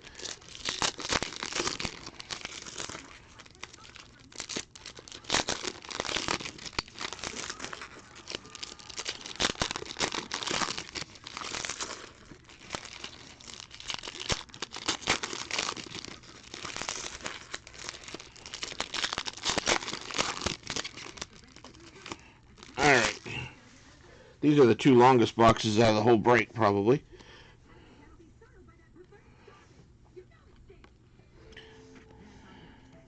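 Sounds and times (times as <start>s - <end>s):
wrappers tearing and crinkling: 0.0s - 23.6s.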